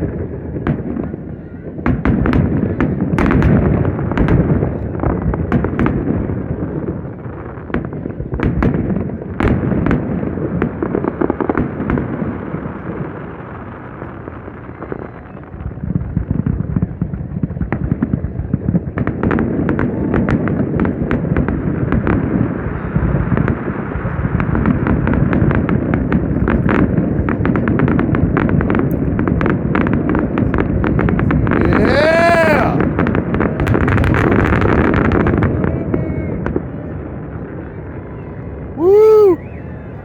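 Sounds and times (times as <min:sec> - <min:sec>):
fireworks cracking and popping: 0:00.0 - 0:36.9, 0:38.8 - 0:39.4.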